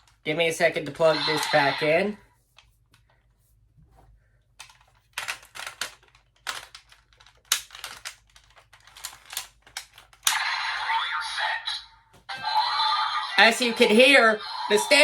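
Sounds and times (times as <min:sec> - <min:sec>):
toy electronic standby sound: 0:00.9 - 0:02.1, 0:10.2 - 0:15.0
plastic toy clicks and knocks: 0:04.6 - 0:10.5.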